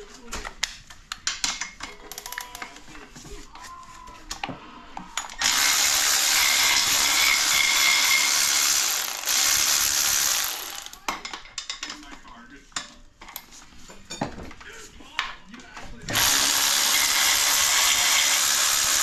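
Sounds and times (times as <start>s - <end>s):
ratchet clicking rapidly: 5.4s - 11.0s, 16.1s - 19.0s.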